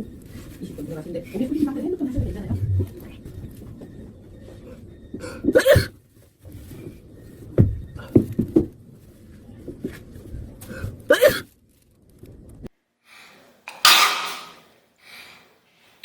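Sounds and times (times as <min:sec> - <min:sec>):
woman coughing: 0:05.5 - 0:05.9, 0:11.1 - 0:11.5.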